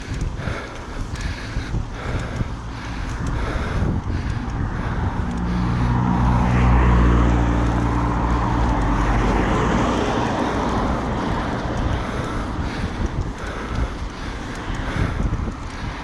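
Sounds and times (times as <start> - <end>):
car passing by: 4.1 - 15.8.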